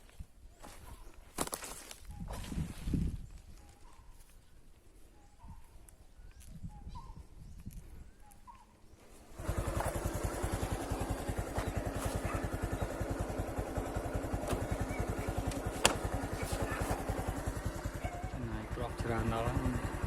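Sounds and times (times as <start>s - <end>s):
faint bird chirps: 2.0s - 9.2s
small engine puttering: 9.2s - 20.0s.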